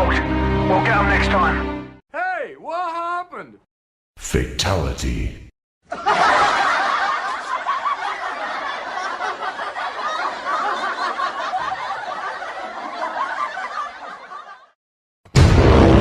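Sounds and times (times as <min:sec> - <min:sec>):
group of people laughing: 0:05.9 - 0:14.8.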